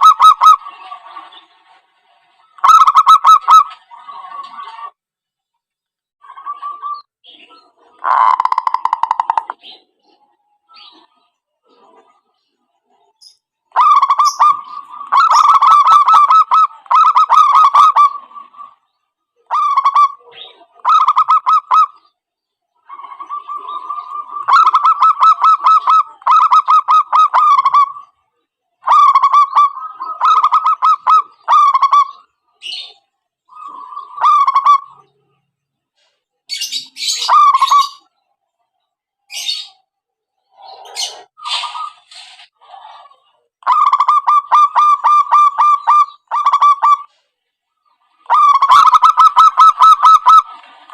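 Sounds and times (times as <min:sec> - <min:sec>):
doves cooing in staccato phrases: 0:00.0 - 0:01.4, 0:02.6 - 0:05.0, 0:07.9 - 0:10.1, 0:13.7 - 0:22.1, 0:22.8 - 0:28.2, 0:28.8 - 0:32.8, 0:33.5 - 0:35.2, 0:42.6 - 0:47.1, 0:47.9 - 0:50.9.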